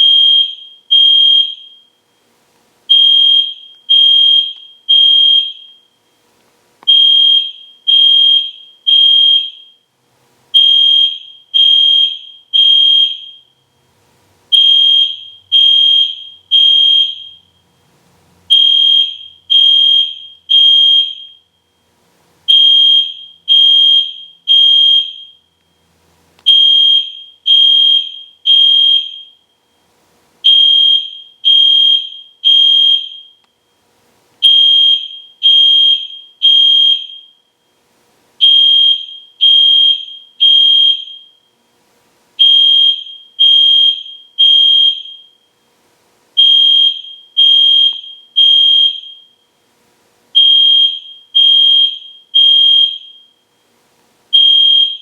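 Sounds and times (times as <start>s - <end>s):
fire alarm horn beeping: 0.0s - 2.0s, 2.9s - 6.0s, 6.9s - 9.8s, 10.5s - 13.6s, 14.5s - 17.8s, 18.5s - 21.8s, 22.5s - 25.6s, 26.4s - 29.8s, 30.4s - 33.7s, 34.4s - 37.6s, 38.4s - 41.5s, 42.4s - 45.6s, 46.4s - 49.5s, 50.4s - 53.5s, 54.3s - 55.0s.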